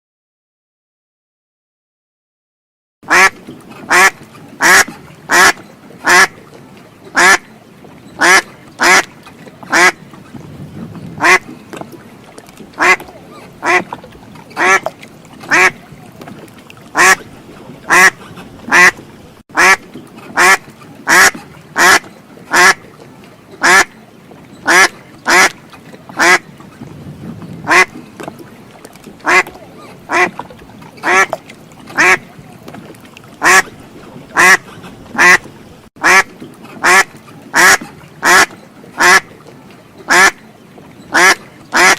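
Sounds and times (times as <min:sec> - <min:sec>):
duck quacking: 0:03.1 - 0:06.4, 0:07.2 - 0:07.4, 0:08.2 - 0:09.1, 0:09.7 - 0:10.0, 0:11.2 - 0:11.4, 0:12.8 - 0:13.9, 0:14.6 - 0:14.9, 0:15.5 - 0:15.8, 0:17.0 - 0:17.2, 0:17.9 - 0:19.0, 0:19.6 - 0:19.8, 0:20.4 - 0:22.8, 0:23.6 - 0:23.9, 0:24.7 - 0:25.5, 0:26.2 - 0:26.4, 0:27.6 - 0:27.9, 0:29.2 - 0:30.3, 0:31.0 - 0:31.4, 0:32.0 - 0:32.3, 0:33.4 - 0:33.7, 0:34.4 - 0:39.3, 0:40.1 - 0:40.4, 0:41.1 - 0:41.9.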